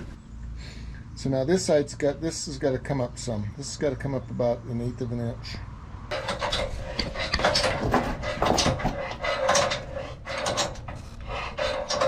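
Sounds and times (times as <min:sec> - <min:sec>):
metal scraping: 0:06.1 - 0:12.0.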